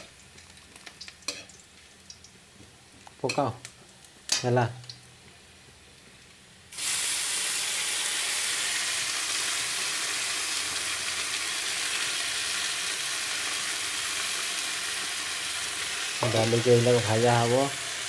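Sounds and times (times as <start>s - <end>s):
lentils sizzling in hot oil: 0.0s - 2.3s, 6.2s - 18.0s.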